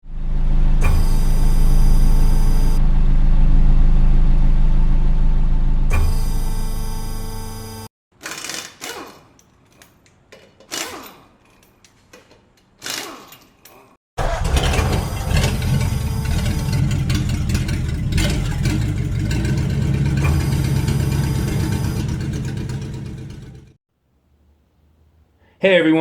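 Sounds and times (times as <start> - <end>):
car engine starting and rumbling: 0.1 - 7.7, 14.2 - 23.8.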